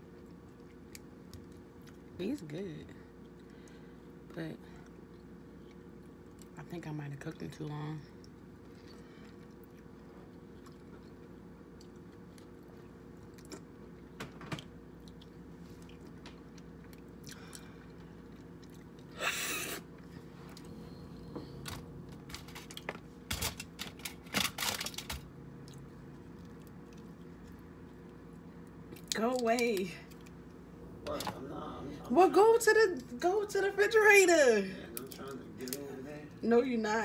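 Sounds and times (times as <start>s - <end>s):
chewing: 0.0s - 2.2s, 4.8s - 6.6s, 8.1s - 14.2s, 14.9s - 19.2s, 25.6s - 29.2s
low steady hum: 0.0s - 37.0s.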